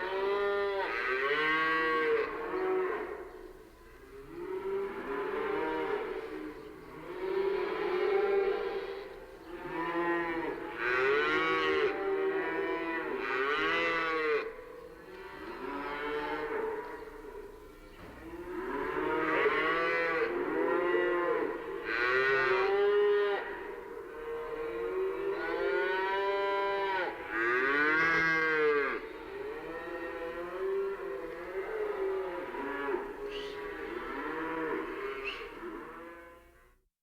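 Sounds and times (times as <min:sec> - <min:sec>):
cattle mooing: 0:18.1 - 0:23.6, 0:24.2 - 0:36.5.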